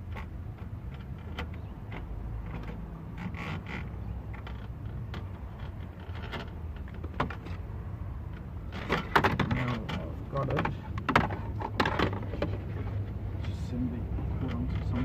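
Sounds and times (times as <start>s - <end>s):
plastic trim clicks and creaks: 0.0s - 13.6s.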